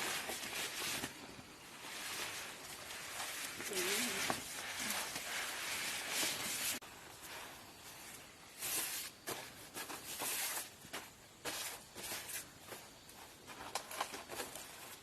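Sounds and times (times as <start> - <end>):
rustling and scraping: 0.0 - 15.0.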